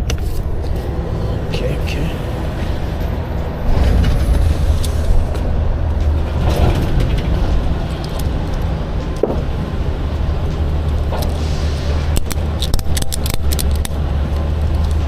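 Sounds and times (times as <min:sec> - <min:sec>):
vehicle engine rumbling: 0:00.0 - 0:15.0.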